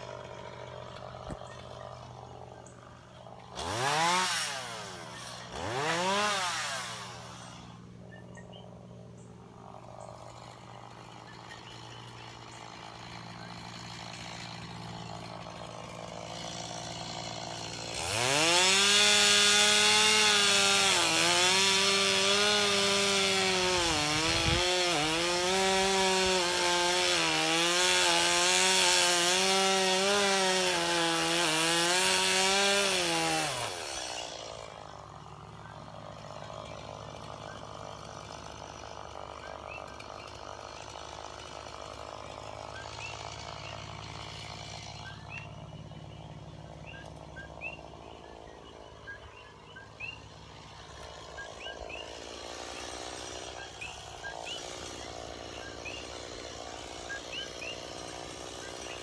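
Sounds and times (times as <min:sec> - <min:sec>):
chainsaw cutting wood: 0:00.0 - 0:59.0.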